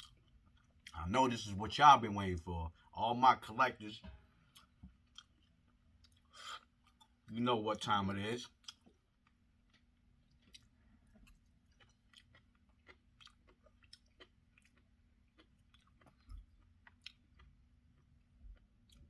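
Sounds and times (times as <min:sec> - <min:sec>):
person chewing: 0:00.0 - 0:01.0, 0:04.4 - 0:07.3, 0:08.4 - 0:19.0
low steady hum: 0:00.0 - 0:19.0.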